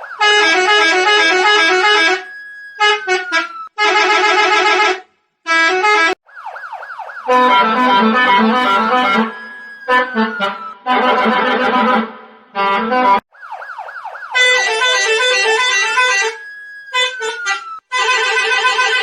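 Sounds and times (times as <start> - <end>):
falling siren wail: 0.0 - 3.8, 6.0 - 18.1
fast siren yelp: 0.0 - 3.8, 6.2 - 12.0, 13.2 - 18.1
musical bus horn: 0.2 - 6.2, 7.3 - 13.2, 14.4 - 19.0.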